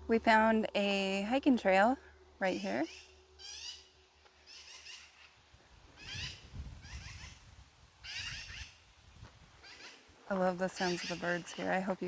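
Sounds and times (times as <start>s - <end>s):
songbirds chirping faintly: 0.0s - 12.0s.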